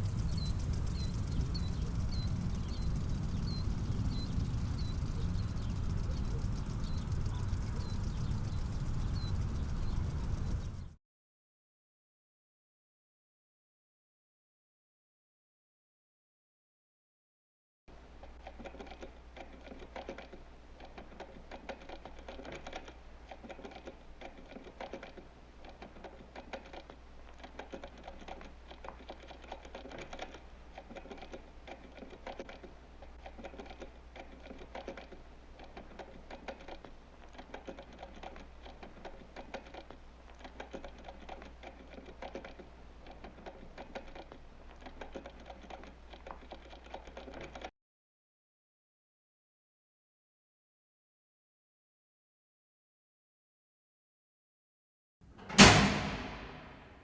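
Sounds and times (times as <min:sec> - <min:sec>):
fast typing on computer keyboard: 0:00.0 - 0:11.0, 0:18.0 - 0:47.7
steady low hum: 0:00.0 - 0:11.0.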